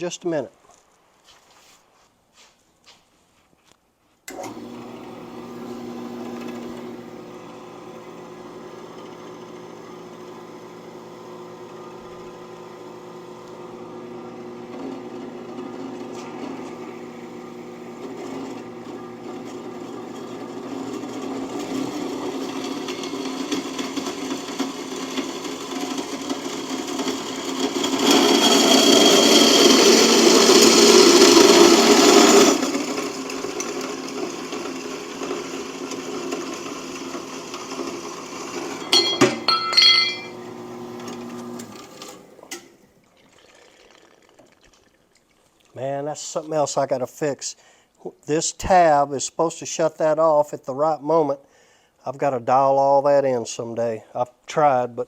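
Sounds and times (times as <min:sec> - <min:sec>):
band saw cutting metal: 0:27.1 - 0:32.7.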